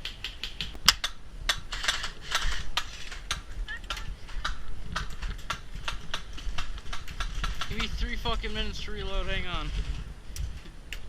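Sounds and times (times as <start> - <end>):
airsoft guns firing: 0.2 - 8.5.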